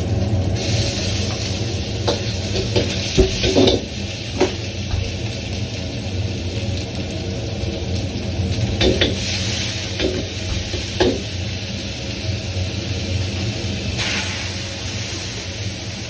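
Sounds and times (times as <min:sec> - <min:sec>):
food sizzling in a wok: 0:00.0 - 0:16.0.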